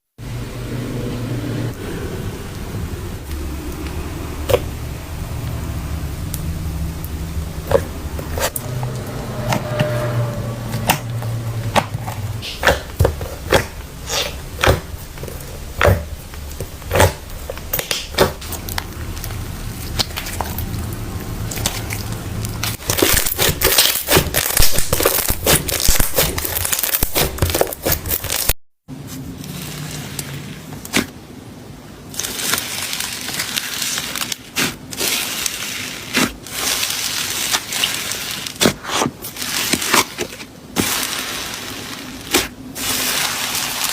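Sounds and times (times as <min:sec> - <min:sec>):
slime squishing with clicks and pops: 0:10.7 - 0:28.5, 0:42.3 - 0:42.5.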